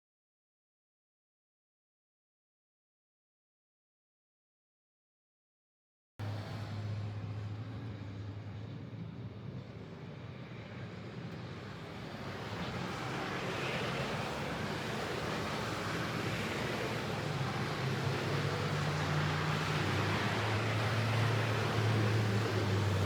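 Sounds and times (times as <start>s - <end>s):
low engine-like hum: 6.2s - 23.0s.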